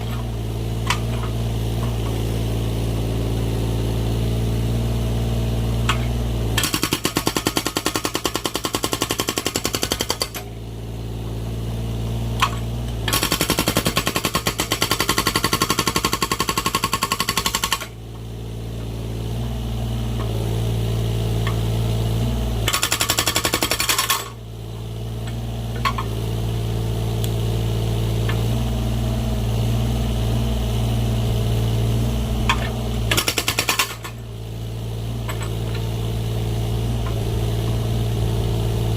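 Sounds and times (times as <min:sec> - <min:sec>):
diesel engine running: 0:00.0 - 0:38.9
hydraulic breaker hammering: 0:05.9 - 0:10.5, 0:12.4 - 0:18.0, 0:22.7 - 0:24.4, 0:32.4 - 0:34.2.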